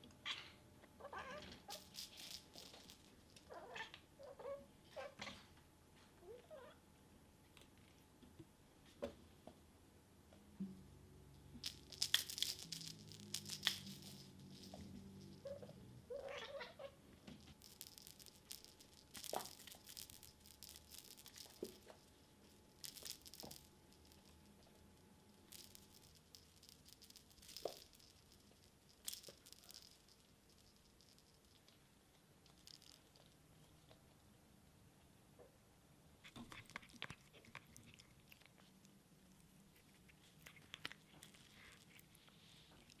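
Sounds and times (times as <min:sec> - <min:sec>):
kittens playing with toy rustling: 0:01.2 - 0:03.8, 0:11.4 - 0:31.8, 0:32.4 - 0:33.4, 0:39.8 - 0:43.0
soft cat vocal sounds: 0:03.5 - 0:05.5, 0:06.1 - 0:06.8, 0:15.4 - 0:17.0.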